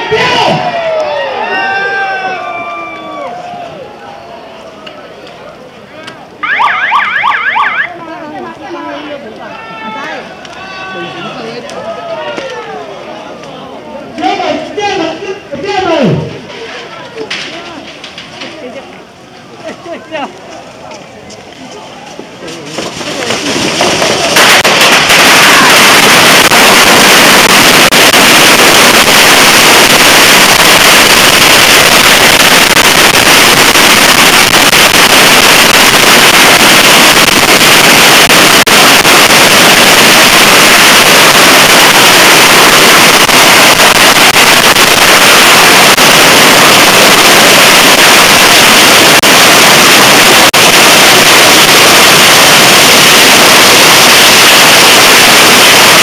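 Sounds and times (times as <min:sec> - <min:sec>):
firecrackers banging: 0:06.4 - 0:08.0, 0:16.3 - 0:18.9, 0:22.2 - 0:56.0
rockets hissing: 0:23.1 - 0:56.0.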